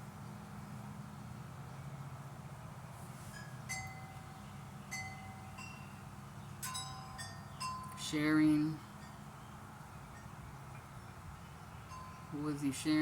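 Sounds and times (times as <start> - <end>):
wind chimes ringing: 3.4 - 9.4, 10.1 - 12.8.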